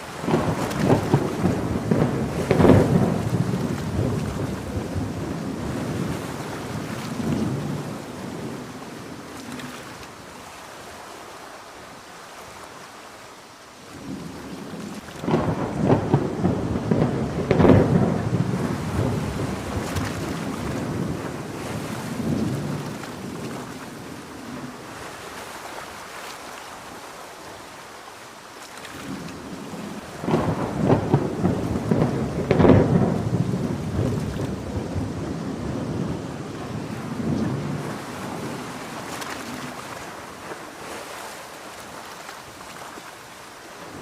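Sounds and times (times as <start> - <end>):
thunder rolling: 0.0 - 9.6, 14.0 - 24.6, 29.0 - 40.4
heavy rain: 0.0 - 44.0
surf from stormy sea: 0.0 - 44.0.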